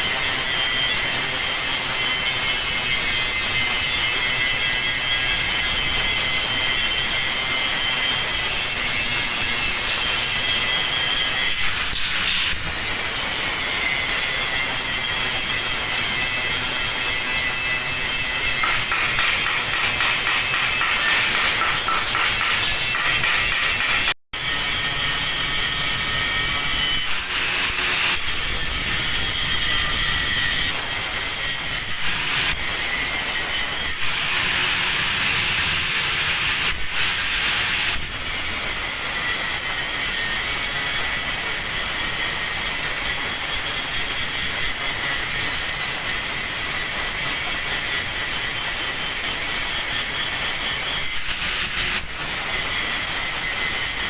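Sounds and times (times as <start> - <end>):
angle grinder grinding steel: 0.1 - 41.8.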